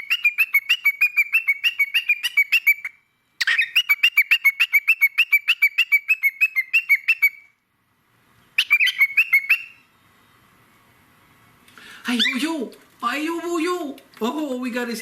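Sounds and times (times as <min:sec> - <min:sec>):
cockatiel chirping: 0:00.0 - 0:07.5, 0:08.6 - 0:09.9, 0:12.1 - 0:12.5.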